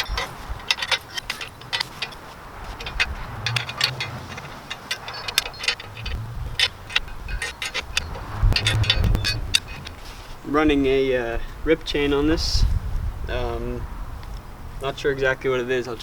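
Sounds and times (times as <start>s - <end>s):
sharp metallic clicking: 0.0s - 10.0s.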